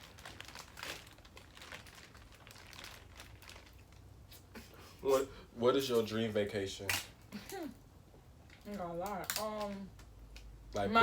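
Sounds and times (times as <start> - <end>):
plastic crinkling and rustling: 0.0 - 4.4.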